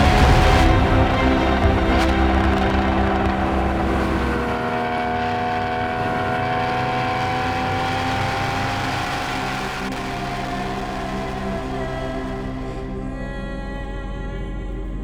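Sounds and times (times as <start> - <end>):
deep low rumble: 0.0 - 7.5
car engine revving under load: 0.0 - 12.6.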